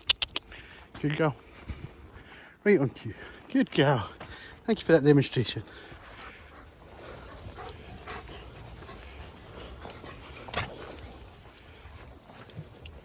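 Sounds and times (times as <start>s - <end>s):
dogs making quiet vocal sounds: 5.5s - 13.0s.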